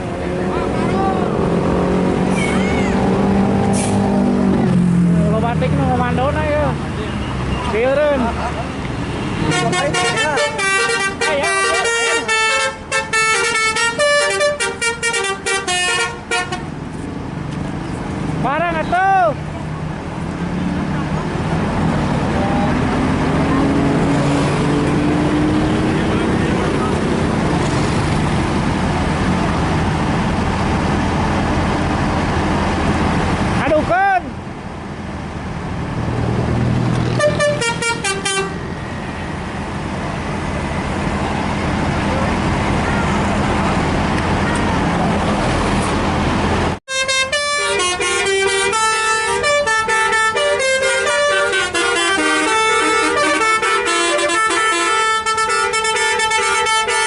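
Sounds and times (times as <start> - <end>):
engine hum and road noise: 0.0 - 57.0
musical bus air horns: 3.5 - 4.1, 9.4 - 16.8, 37.0 - 38.8, 46.9 - 57.0.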